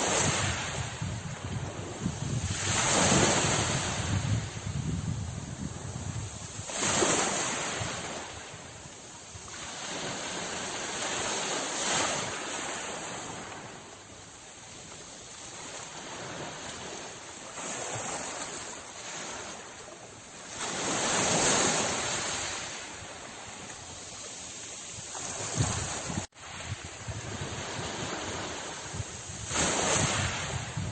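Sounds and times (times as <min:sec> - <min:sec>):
wind buffeting microphone: 0:00.0 - 0:10.7, 0:24.8 - 0:30.9
sea waves washing ashore: 0:00.0 - 0:30.9.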